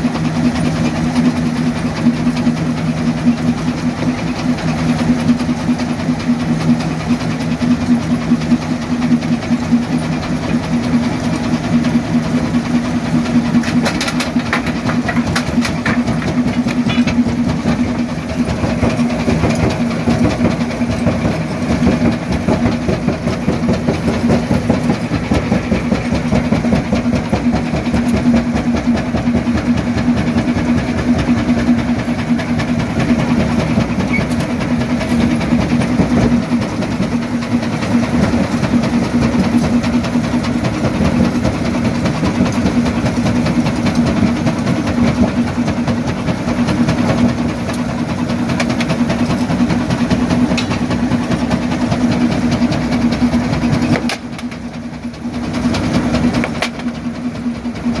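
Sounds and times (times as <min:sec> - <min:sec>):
crusher machine hum: 0:00.0 - 0:58.0
rock rattling and crunching: 0:13.4 - 0:28.3.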